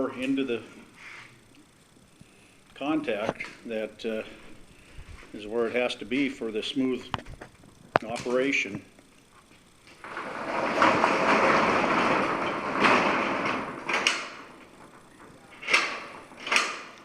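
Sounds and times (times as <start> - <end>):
metal door rattling scrape: 10.0 - 17.0.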